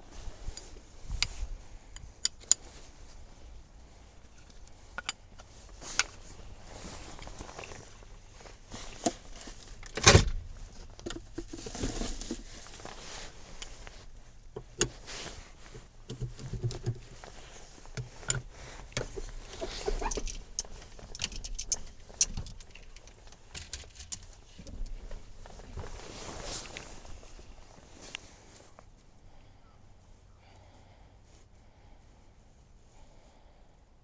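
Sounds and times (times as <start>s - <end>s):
knocks and clicks of handling: 4.4s - 27.0s.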